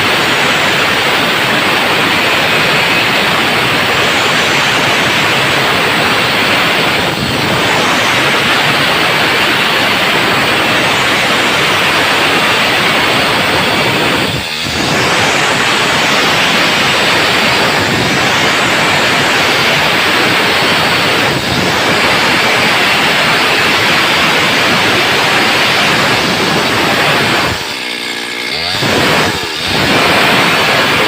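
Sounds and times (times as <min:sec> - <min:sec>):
chainsaw cutting wood: 0:00.0 - 0:31.0.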